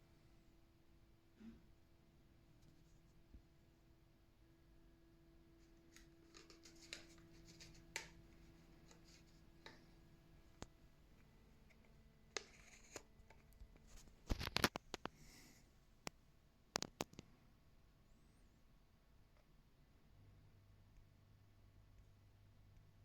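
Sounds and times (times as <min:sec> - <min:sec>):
handling rustling: 0:05.9 - 0:15.2.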